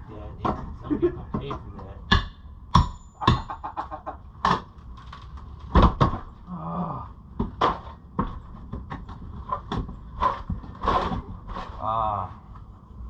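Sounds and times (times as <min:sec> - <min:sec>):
knocks and bangs on wood: 0:05.6 - 0:06.4, 0:07.3 - 0:11.7.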